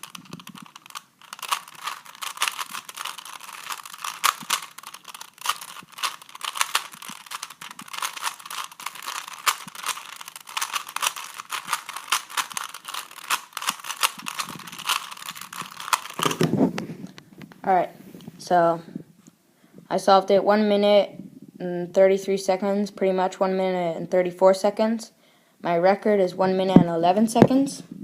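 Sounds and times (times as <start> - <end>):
puzzle cube layers clicking: 0.0 - 16.5.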